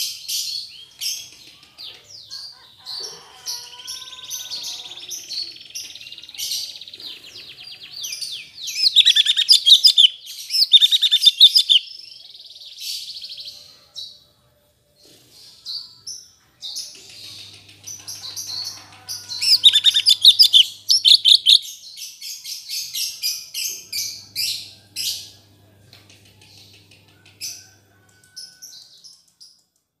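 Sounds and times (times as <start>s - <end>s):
bird chirping and trilling: 6.4s - 12.0s, 18.0s - 25.3s.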